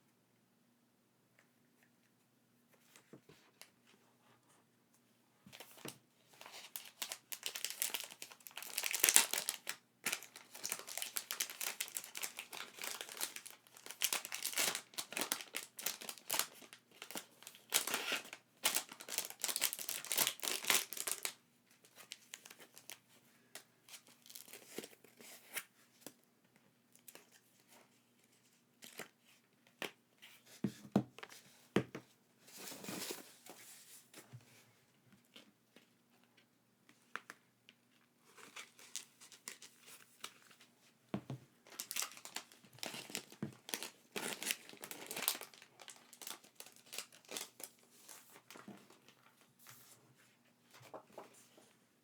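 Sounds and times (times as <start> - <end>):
packaging crinkling and tearing: 6.4 - 23.0, 41.6 - 48.6.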